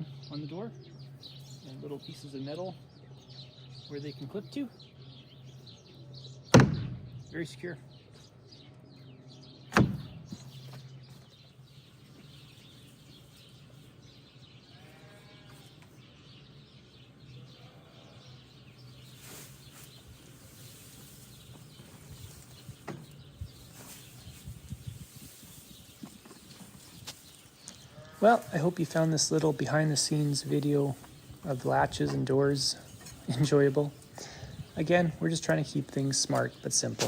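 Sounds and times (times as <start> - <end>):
sharp knocks: 6.5 - 7.3, 9.7 - 10.4
livestock bleating: 14.6 - 15.8.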